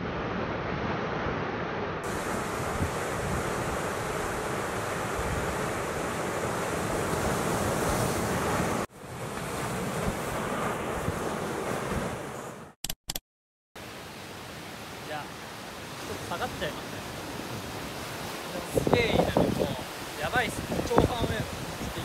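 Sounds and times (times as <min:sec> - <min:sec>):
ocean surf breaking: 0:00.0 - 0:12.8, 0:13.8 - 0:22.0
wind buffeting microphone: 0:02.0 - 0:08.8, 0:17.3 - 0:22.0.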